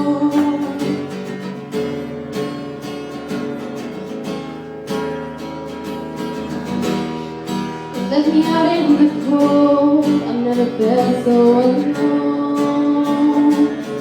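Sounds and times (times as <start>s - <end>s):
person singing: 0.0s - 1.2s, 8.0s - 14.0s
acoustic guitar strumming chords: 0.0s - 14.0s.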